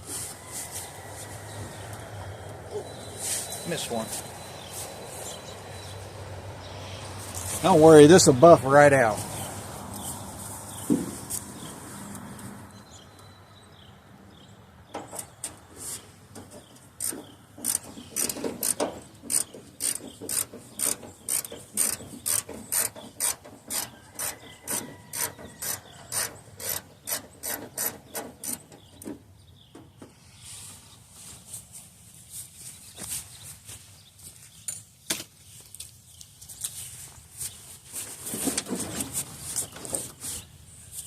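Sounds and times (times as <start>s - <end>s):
socket ratchet clicking: 17.0s - 28.6s.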